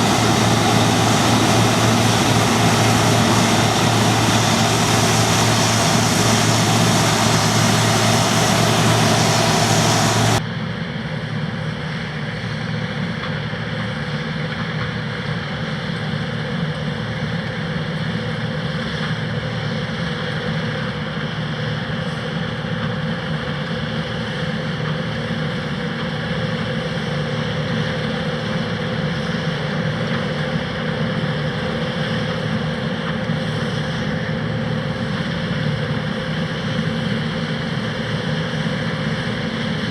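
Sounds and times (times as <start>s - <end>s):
combine harvester diesel engine: 0.0s - 10.4s.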